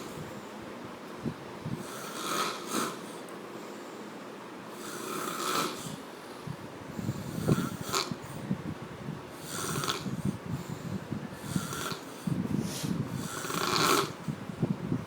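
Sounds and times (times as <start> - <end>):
heavy rattling snoring: 1.7 - 3.2, 4.7 - 6.1, 7.0 - 8.4, 9.3 - 14.3
breathy hiss: 1.7 - 8.5, 9.3 - 14.2.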